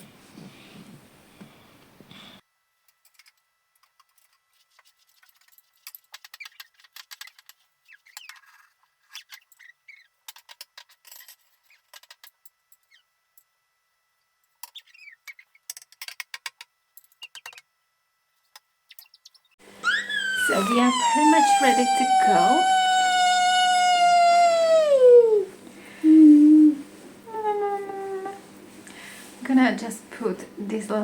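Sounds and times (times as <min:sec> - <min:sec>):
small birds chirping: 0:18.9 - 0:23.9.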